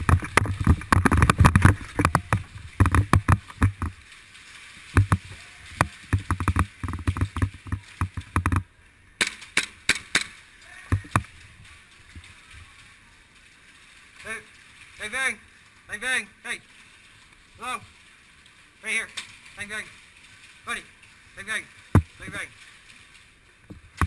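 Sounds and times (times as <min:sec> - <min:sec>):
gear banging against camera: 0:00.0 - 0:04.0, 0:04.9 - 0:10.3, 0:10.9 - 0:11.3, 0:21.9 - 0:22.4
airsoft guns firing: 0:09.2 - 0:10.4.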